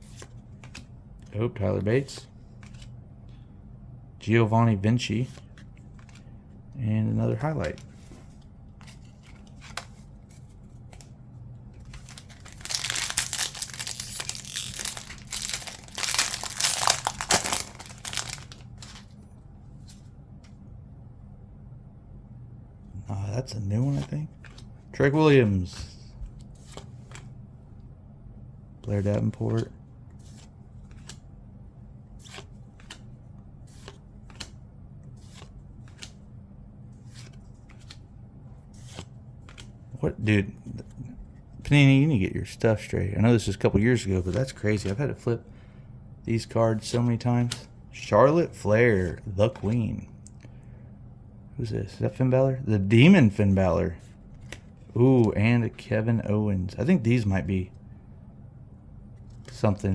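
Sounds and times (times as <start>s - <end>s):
faint low hum: 0.0s - 59.9s
card pack wrapper crinkling: 11.9s - 19.1s.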